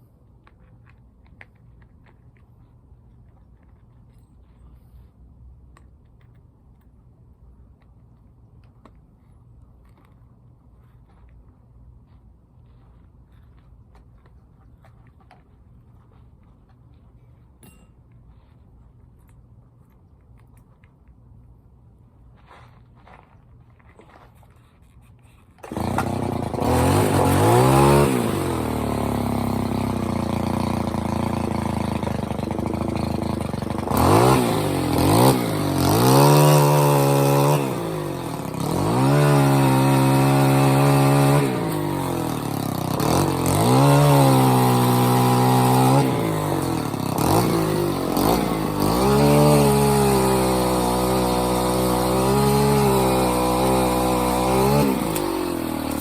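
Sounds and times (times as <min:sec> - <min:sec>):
small petrol engine revving: 0:25.6 - 0:56.0.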